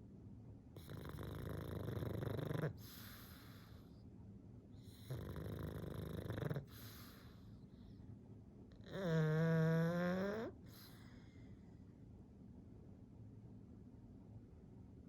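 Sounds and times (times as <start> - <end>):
dog snoring: 0.8 - 3.9, 4.8 - 7.5, 8.8 - 11.4
soft breath: 6.6 - 8.1, 10.6 - 12.0.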